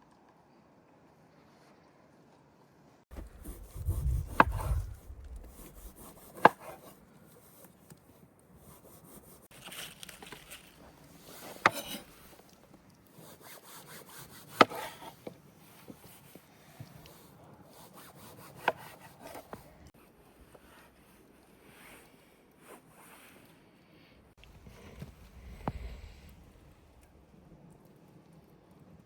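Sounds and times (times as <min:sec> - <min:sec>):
scraping against wood: 0:03.2 - 0:06.9, 0:08.7 - 0:12.6, 0:13.2 - 0:16.1, 0:18.0 - 0:19.9.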